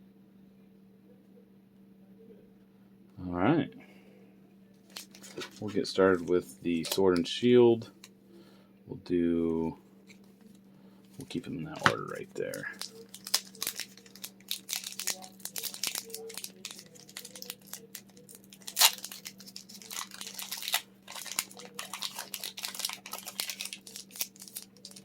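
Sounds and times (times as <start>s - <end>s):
foil pack tearing and crinkling: 4.9s - 7.2s, 11.7s - 25.0s.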